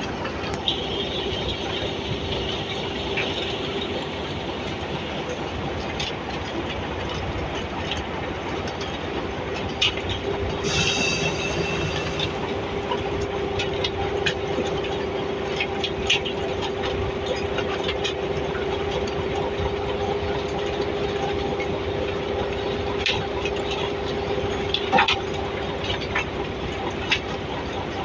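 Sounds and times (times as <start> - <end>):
heavy machinery whining: 0.0 - 5.6, 10.3 - 13.2
high squeal: 0.5 - 4.9, 10.6 - 12.6.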